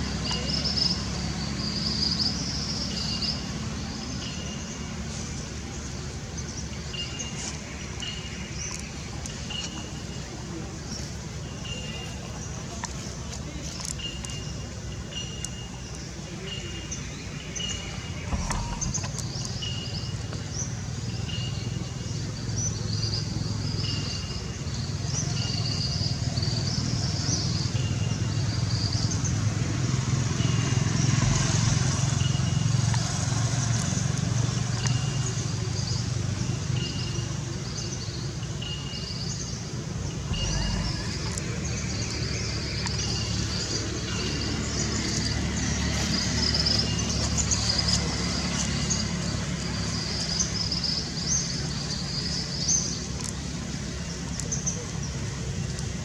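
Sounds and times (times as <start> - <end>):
low motor hum: 18.1 - 20.1, 29.6 - 34.6, 40.1 - 45.4.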